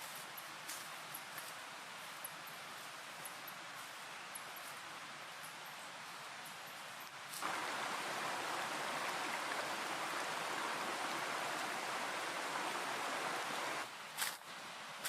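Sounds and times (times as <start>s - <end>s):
rushing water noise: 7.3s - 14.0s.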